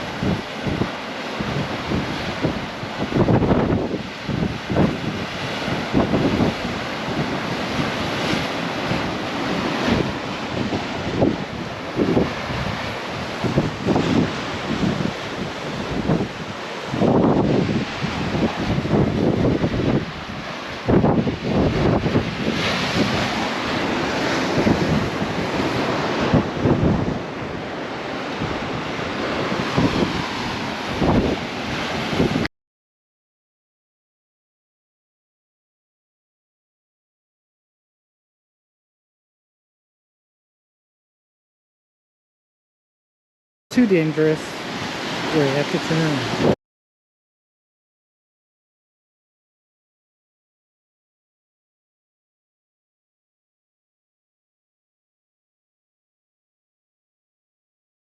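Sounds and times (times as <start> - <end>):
ocean surf rushing: 0.0 - 32.5, 43.7 - 46.6
wind buffeting microphone: 0.0 - 32.5.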